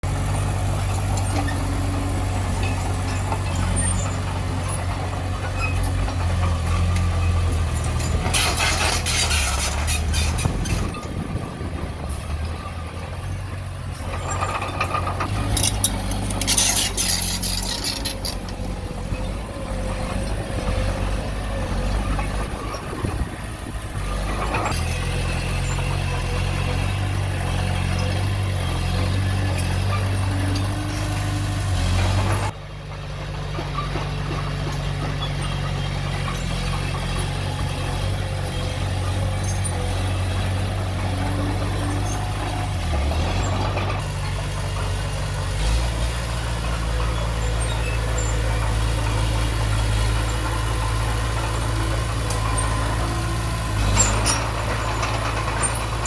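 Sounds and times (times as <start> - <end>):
diesel engine of earthmoving equipment: 0.0 - 56.0.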